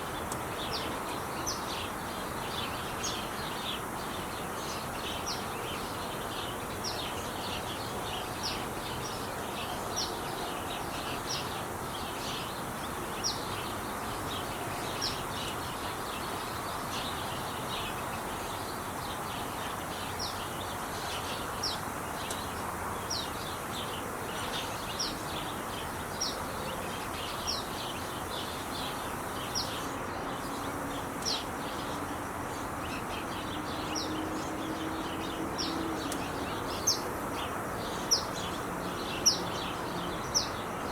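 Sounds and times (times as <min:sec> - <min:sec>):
bird chirping: 0:04.4 - 0:40.9
freeway traffic rushing: 0:25.3 - 0:40.9.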